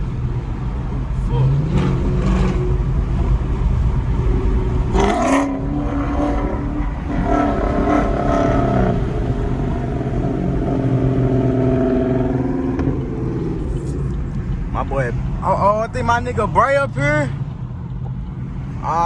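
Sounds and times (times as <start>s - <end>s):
car engine and road noise: 0.0s - 19.0s
engine revving: 1.1s - 15.5s.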